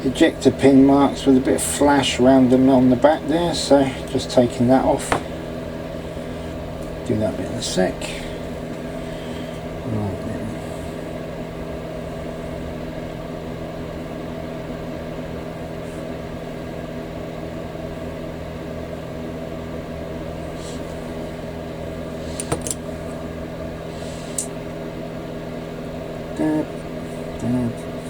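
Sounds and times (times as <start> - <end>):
steady machine hum: 0.0 - 28.0.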